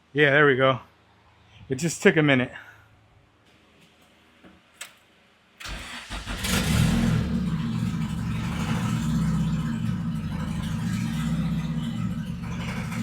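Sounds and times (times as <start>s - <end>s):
starter motor cranking: 5.6s - 7.2s
car engine running: 6.4s - 13.0s.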